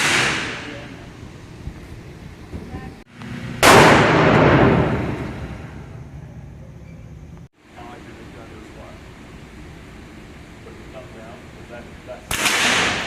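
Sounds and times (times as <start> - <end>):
gunshot: 0.0 - 0.9, 3.6 - 5.8, 12.3 - 13.0.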